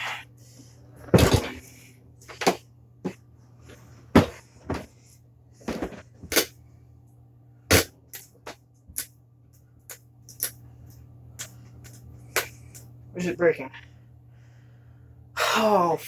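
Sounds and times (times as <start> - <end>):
faint low hum: 0.0 - 16.0
knocks and bumps of handling: 1.0 - 3.2, 4.1 - 5.0, 5.6 - 6.4.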